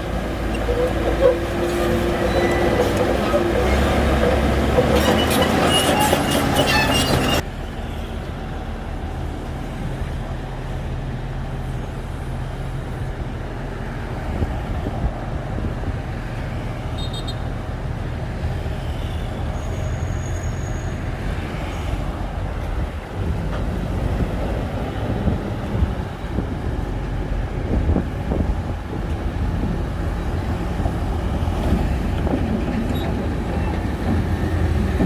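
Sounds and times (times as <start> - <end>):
bulldozer diesel engine droning: 0.0 - 11.7.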